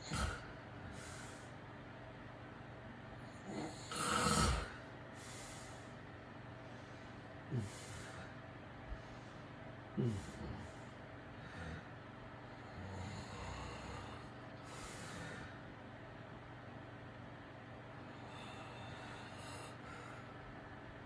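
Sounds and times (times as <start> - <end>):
man snoring: 0.0 - 1.3, 3.3 - 4.8, 7.5 - 8.3, 10.0 - 10.8, 11.5 - 11.9, 12.7 - 14.3
faint steady hum: 0.0 - 21.0
breathy exhale: 4.6 - 6.0.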